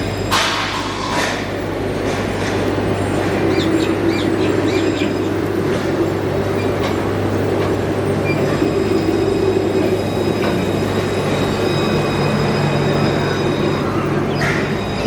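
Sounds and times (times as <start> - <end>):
tram running on rails: 0.0 - 15.0
thin high whining tones: 8.1 - 15.0.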